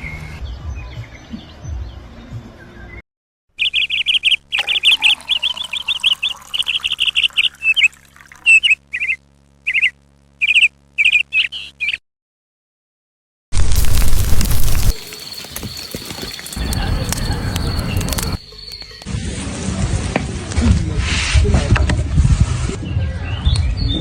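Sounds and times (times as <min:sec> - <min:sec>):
faint outdoor background: 0:00.0 - 0:12.0
songbird chirping: 0:03.6 - 0:12.0, 0:14.6 - 0:19.1.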